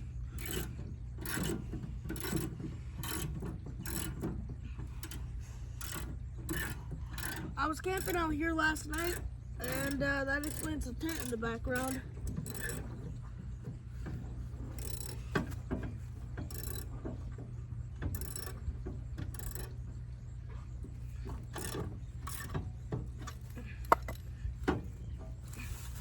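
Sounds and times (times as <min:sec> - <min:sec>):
steady low hum: 0:00.0 - 0:26.0
jack clicking and ratcheting: 0:00.3 - 0:05.2, 0:05.8 - 0:13.2, 0:14.6 - 0:15.8, 0:16.4 - 0:17.0, 0:18.0 - 0:19.8, 0:21.3 - 0:24.3.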